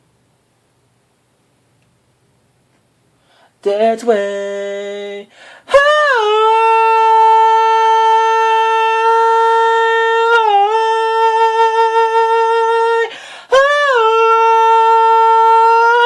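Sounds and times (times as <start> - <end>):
quick breath: 3.2 - 3.6, 5.3 - 5.7, 13.1 - 13.5
person singing wordless notes: 3.6 - 16.0.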